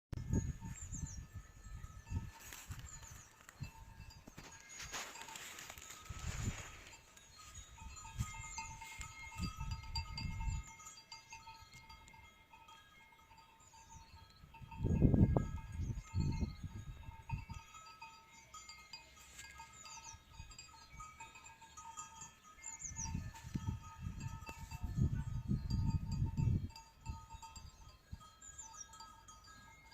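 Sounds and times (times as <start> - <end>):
low rumbling wind gusts: 0.2 - 2.3, 14.4 - 17.6, 23.0 - 27.8
birds chirping: 0.2 - 5.3, 13.5 - 14.4, 17.6 - 23.5, 27.2 - 29.9
sheep bells clinking: 0.2 - 29.9.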